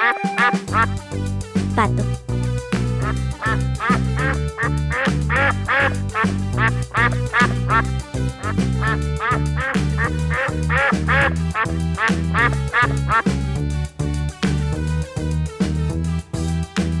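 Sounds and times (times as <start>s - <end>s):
duck quacking: 0.0s - 13.6s
background music with steady beat: 0.0s - 17.0s.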